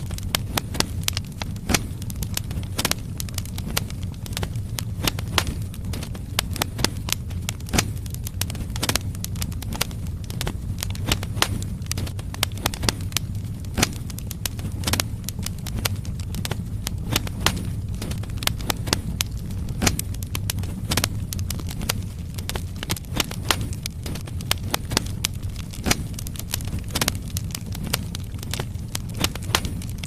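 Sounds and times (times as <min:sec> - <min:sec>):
firewood crackling and popping: 0:00.0 - 0:30.0
low rumble of fire: 0:00.0 - 0:30.0.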